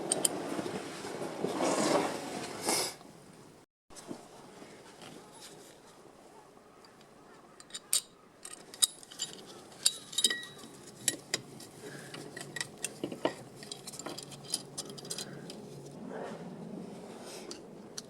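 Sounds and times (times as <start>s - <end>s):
metallic clinks: 7.6s - 11.5s.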